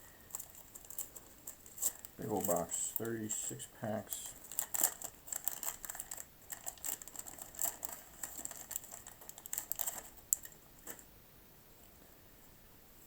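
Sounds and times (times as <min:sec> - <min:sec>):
wax paper packs crinkling: 0:00.0 - 0:11.1.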